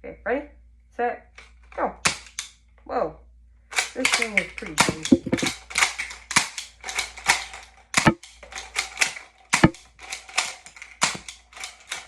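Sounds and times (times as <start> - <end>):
toy blaster plastic clacks: 3.8 - 12.0.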